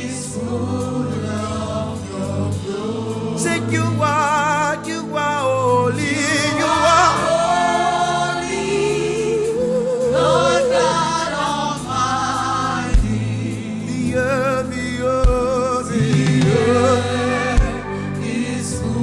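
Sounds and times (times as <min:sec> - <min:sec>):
instrumental backing: 0:00.0 - 0:19.0
voices singing gospel song: 0:00.0 - 0:19.0
low drum thump: 0:13.0 - 0:13.3, 0:15.2 - 0:16.8, 0:17.6 - 0:17.8.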